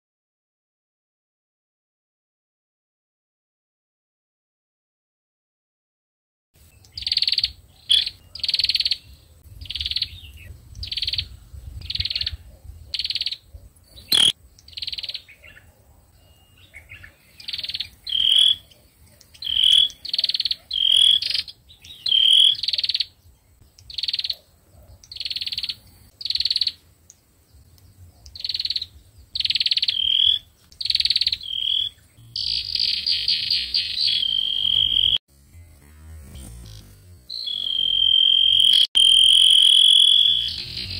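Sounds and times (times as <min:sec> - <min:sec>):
bird buzzy churring calls: 0:06.9 - 0:10.2, 0:10.8 - 0:15.7, 0:16.5 - 0:23.2, 0:28.3 - 0:40.9.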